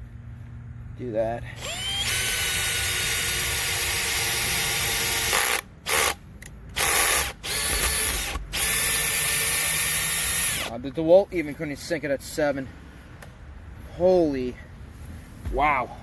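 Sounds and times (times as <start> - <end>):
drill motor whining: 1.6 - 6.2, 6.8 - 10.7.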